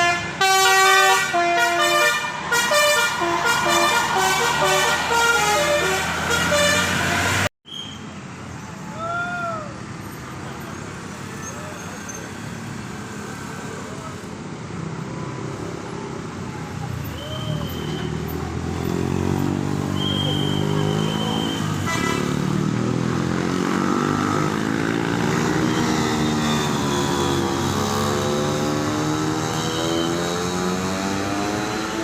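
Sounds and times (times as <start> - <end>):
multi-tone horn playing a tune: 0.0 - 7.5.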